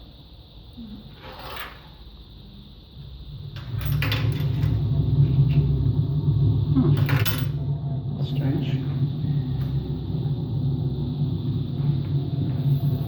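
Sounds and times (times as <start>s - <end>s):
loud low rumble: 2.6s - 13.0s
washing machine running: 2.8s - 13.0s.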